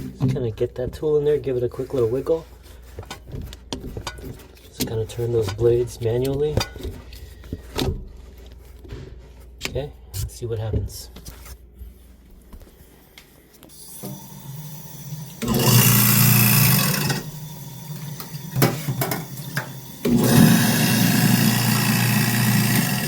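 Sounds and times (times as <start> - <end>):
garbage disposal motor humming: 13.7 - 23.0
water running into sink: 13.7 - 23.0.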